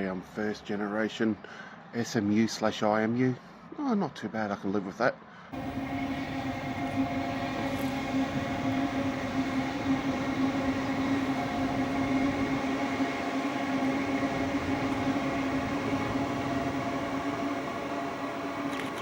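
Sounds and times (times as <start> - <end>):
electric train hum: 5.6 - 19.0.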